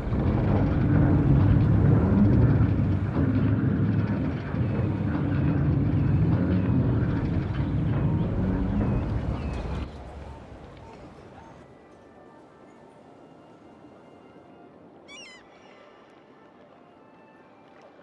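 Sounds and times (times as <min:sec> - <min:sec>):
engine running: 0:00.0 - 0:11.6.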